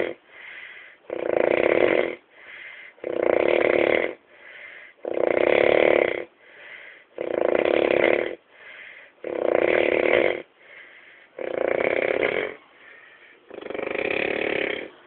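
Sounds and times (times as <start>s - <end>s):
soft breathing: 0.0s - 1.1s, 2.2s - 3.0s, 4.2s - 5.0s, 6.3s - 7.2s, 8.4s - 9.2s, 10.4s - 11.5s, 12.4s - 13.8s
person snoring: 0.0s - 2.2s, 2.9s - 4.2s, 4.8s - 8.4s, 9.2s - 15.0s.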